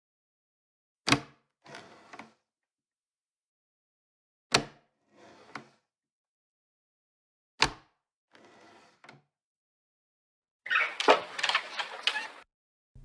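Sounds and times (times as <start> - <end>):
door rattle and click: 10.7 - 12.4.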